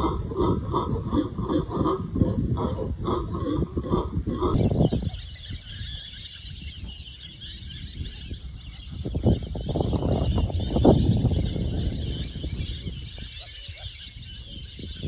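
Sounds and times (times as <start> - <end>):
pig grunting: 0.0 - 4.6.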